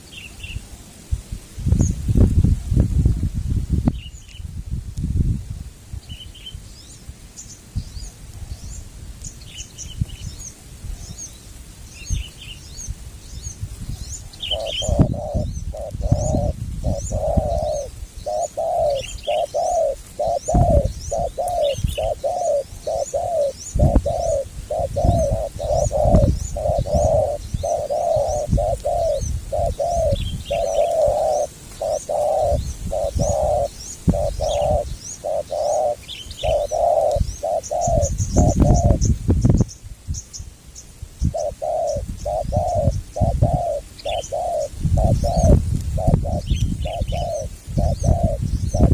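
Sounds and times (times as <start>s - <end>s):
small birds chirping: 3.9s - 4.5s, 6.0s - 48.9s
doves cooing: 14.2s - 39.1s, 41.3s - 48.9s.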